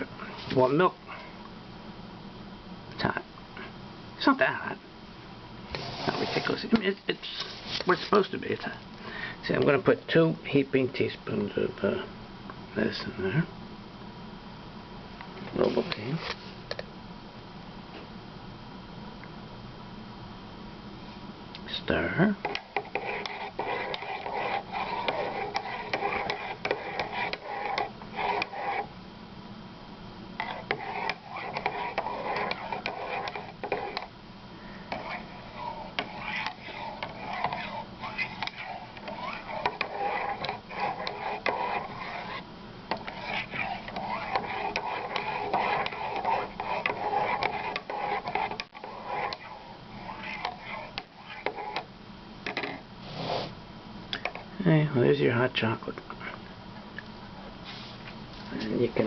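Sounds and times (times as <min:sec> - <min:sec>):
spoon stirring in mug: 0:22.4 - 0:28.9, 0:30.4 - 0:34.1, 0:34.9 - 0:51.9.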